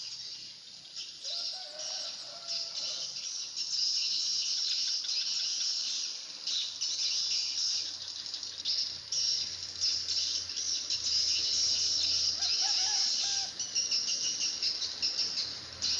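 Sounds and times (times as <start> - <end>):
insects shrilling: 0.0 - 15.9.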